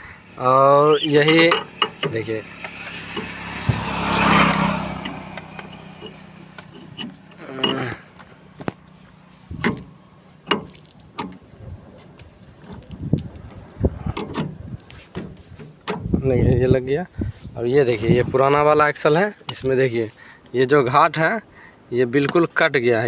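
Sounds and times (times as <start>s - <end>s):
metal scraping: 0.7s - 16.6s
sharp metal knocks and clicks: 1.1s - 8.8s, 9.5s - 11.5s, 12.1s - 16.2s.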